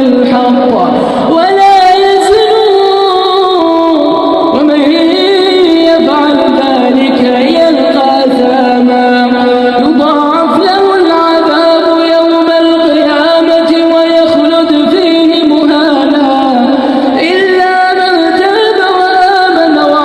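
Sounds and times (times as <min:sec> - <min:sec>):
person chanting melodic recitation: 0:00.0 - 0:20.0.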